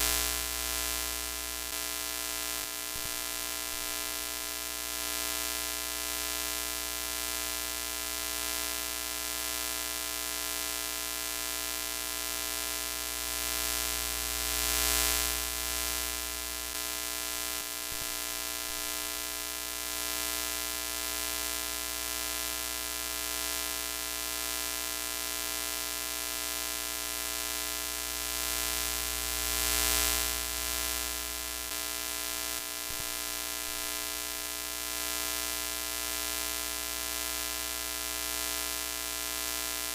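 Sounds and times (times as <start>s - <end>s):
static hiss: 0.0s - 2.0s
buzzing electrical hum: 0.0s - 39.9s.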